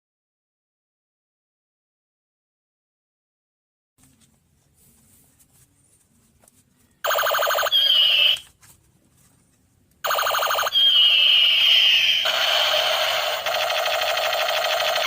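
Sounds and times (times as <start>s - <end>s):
faint handling noise: 4.0s - 7.0s, 8.5s - 10.0s
toy gun electronic laser effect: 7.1s - 8.4s, 10.0s - 15.0s.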